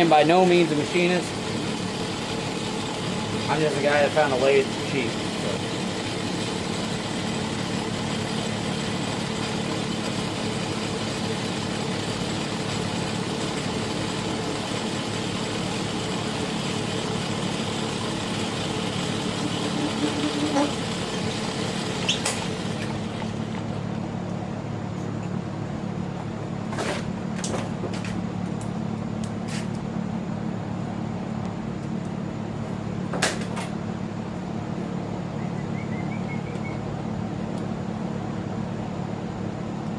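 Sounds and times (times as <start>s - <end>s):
metal lathe motor hum: 0.0s - 24.1s.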